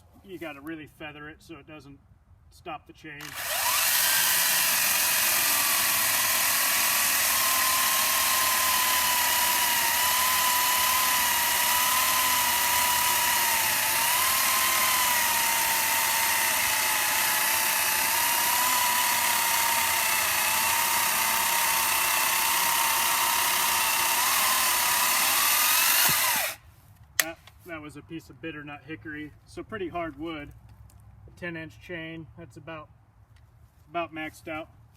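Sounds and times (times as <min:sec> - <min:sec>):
chainsaw motor whining: 0:03.2 - 0:26.6.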